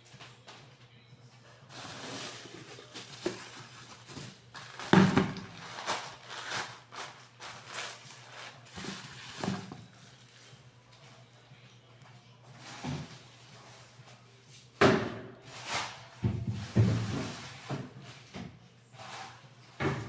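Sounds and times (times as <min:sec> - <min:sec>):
food packages rustling: 0:01.7 - 0:10.6.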